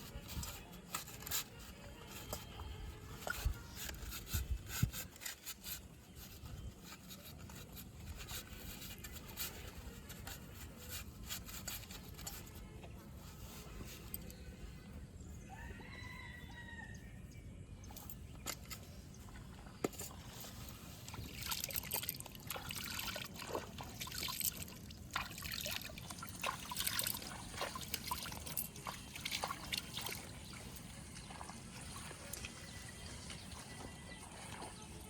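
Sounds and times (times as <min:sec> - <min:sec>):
muddy water sloshing: 0:19.2 - 0:35.0
short irregular splashes: 0:21.0 - 0:35.0.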